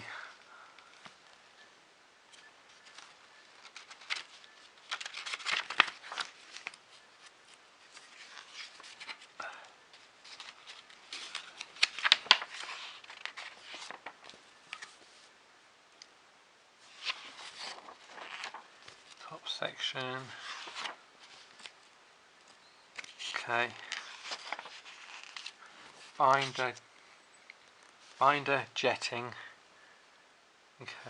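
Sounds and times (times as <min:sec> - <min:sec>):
paper rustling: 0:02.3 - 0:15.3, 0:16.8 - 0:26.8.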